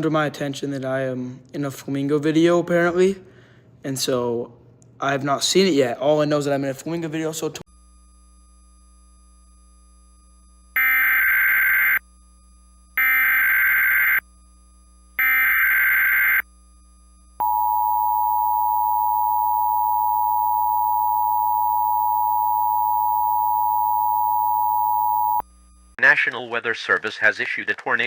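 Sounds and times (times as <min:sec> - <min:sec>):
screeching data bursts: 0:10.8 - 0:12.0, 0:13.0 - 0:14.2, 0:15.2 - 0:16.4
two-tone attention signal: 0:17.4 - 0:25.4.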